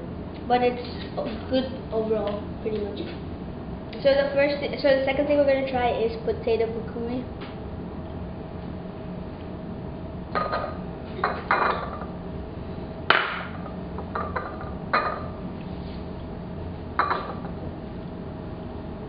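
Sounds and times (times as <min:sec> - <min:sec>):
dishes clinking and knocking: 0:10.4 - 0:12.1, 0:13.1 - 0:15.3, 0:17.0 - 0:17.5.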